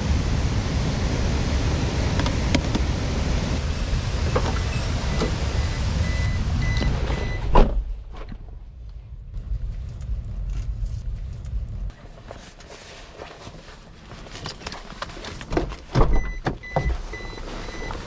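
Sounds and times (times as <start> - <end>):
low rumble: 0.0 - 12.4.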